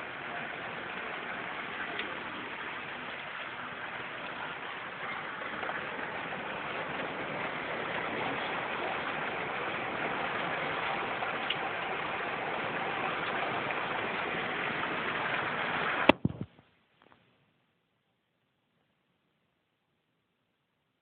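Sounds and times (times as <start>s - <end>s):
heavy rain pouring: 0.0s - 16.5s.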